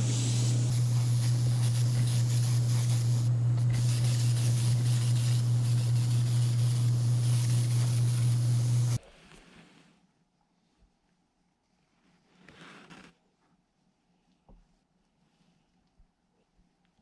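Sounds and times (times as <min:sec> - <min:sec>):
low motor hum: 0:00.0 - 0:09.0
spray paint hissing: 0:00.0 - 0:09.0.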